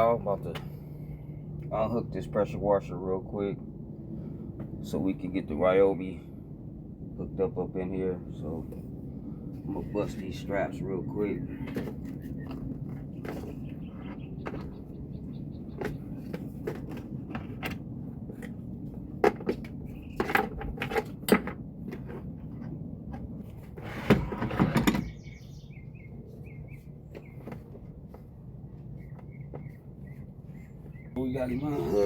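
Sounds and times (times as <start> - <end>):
bird chirping: 11.4 - 16.4, 19.9 - 20.3, 24.8 - 27.8, 28.9 - 32.0.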